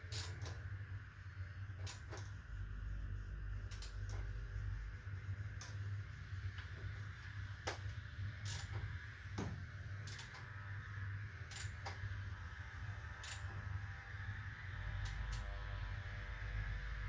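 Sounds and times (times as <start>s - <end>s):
steady low hum: 0.0s - 17.0s
metallic clicks of hand tools: 10.0s - 10.5s.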